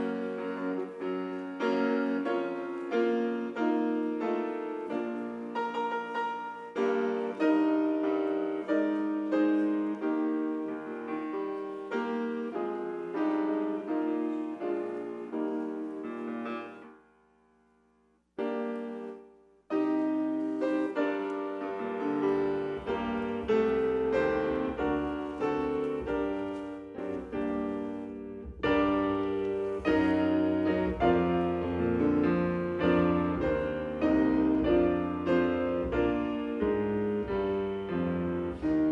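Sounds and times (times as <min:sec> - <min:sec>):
slow solo piano piece: 0:00.0 - 0:17.1, 0:18.4 - 0:38.9.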